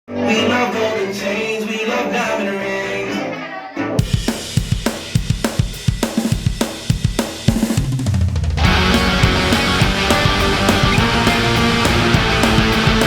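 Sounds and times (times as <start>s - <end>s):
drum beat kick and snare: 4.0s - 13.0s.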